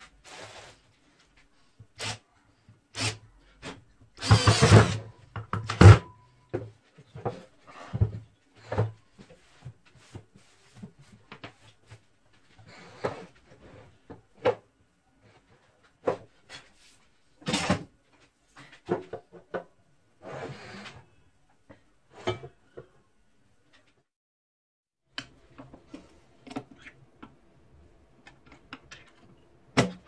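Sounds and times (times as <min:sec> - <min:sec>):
objects knocking and clunking: 0:03.6 - 0:12.1, 0:17.4 - 0:19.9.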